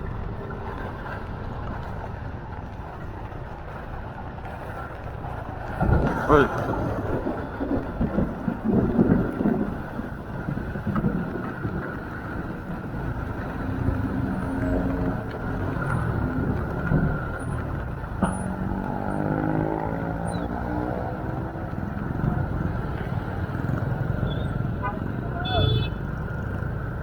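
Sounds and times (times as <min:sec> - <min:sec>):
steady rushing noise: 0:00.0 - 0:27.0.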